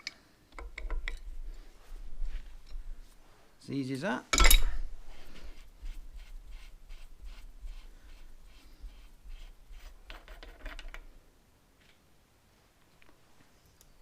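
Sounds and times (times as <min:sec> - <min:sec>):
faint metal parts clicking and scraping: 0:00.0 - 0:01.3, 0:10.1 - 0:11.1.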